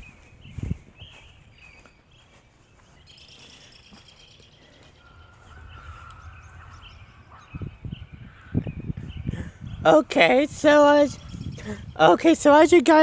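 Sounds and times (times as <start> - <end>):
birds chirping: 0.0 - 13.0
distant thunder rumble: 5.4 - 9.9.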